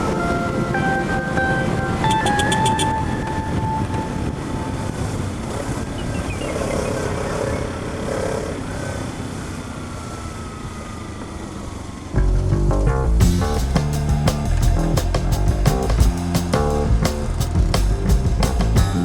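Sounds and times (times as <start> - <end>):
music: 0.0 - 4.6, 12.2 - 19.0
wind and road noise: 0.0 - 19.0
motorcycle engine running: 12.1 - 19.0.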